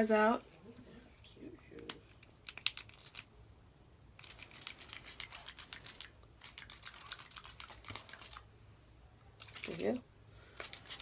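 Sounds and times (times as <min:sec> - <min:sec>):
spray bottle hissing mist: 0:04.2 - 0:08.4, 0:10.6 - 0:11.0.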